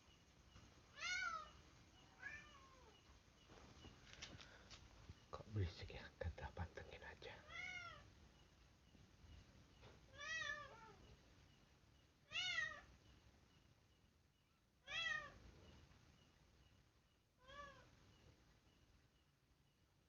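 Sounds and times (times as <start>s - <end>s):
cat meowing: 1.0s - 1.6s, 2.2s - 2.9s, 7.5s - 8.1s, 10.1s - 11.0s, 12.3s - 12.9s, 14.8s - 15.4s, 17.4s - 17.9s.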